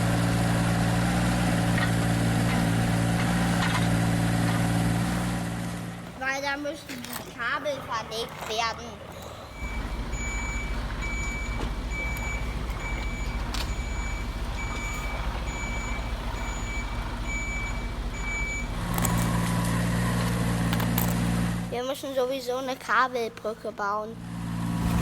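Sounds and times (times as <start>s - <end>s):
low engine rumble: 0.0s - 25.0s
truck reversing alarm beeping: 9.0s - 20.2s.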